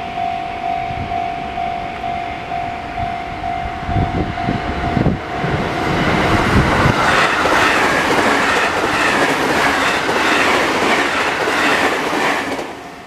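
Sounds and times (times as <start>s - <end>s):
train wheels clattering: 5.8s - 13.0s.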